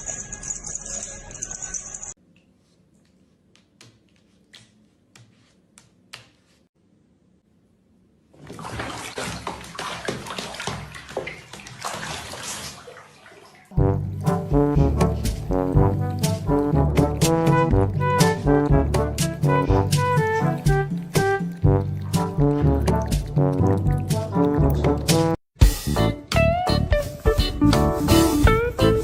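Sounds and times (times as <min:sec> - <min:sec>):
water splashing loudly: 0:08.4 - 0:25.4
brass music: 0:13.7 - 0:29.0.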